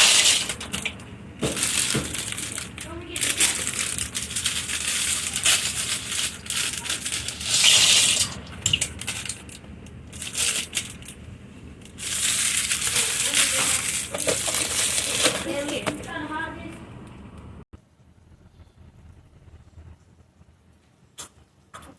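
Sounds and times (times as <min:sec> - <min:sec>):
packet crinkling: 0:00.0 - 0:16.0.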